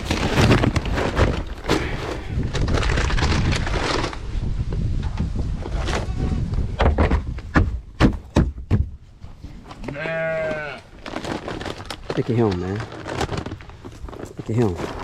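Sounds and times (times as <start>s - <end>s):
wind buffeting microphone: 1.9s - 7.6s
knocks: 6.8s - 9.0s.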